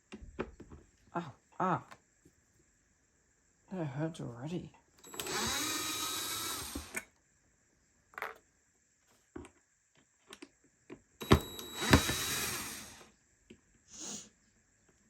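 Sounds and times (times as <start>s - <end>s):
small electric motor whining: 5.0s - 7.0s, 11.2s - 13.0s.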